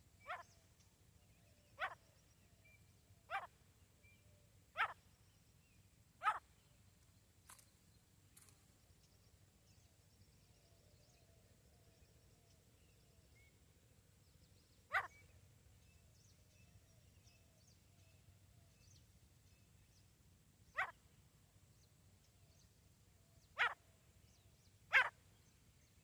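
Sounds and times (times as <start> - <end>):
small birds chirping: 0.0 - 26.0
francolin calling: 20.7 - 21.0, 24.9 - 25.2.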